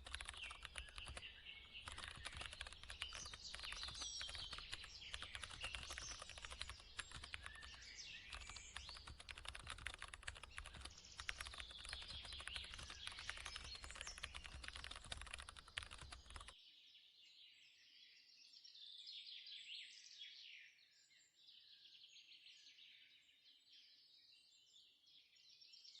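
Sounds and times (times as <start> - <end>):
birds chirping: 0.0 - 16.5
fast keyboard typing: 0.0 - 16.6.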